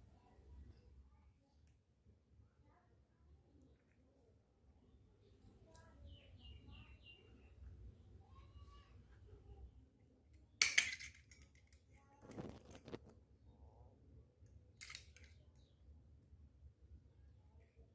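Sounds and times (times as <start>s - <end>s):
toy metal kitchenware clinking: 10.5s - 12.6s, 14.8s - 15.4s.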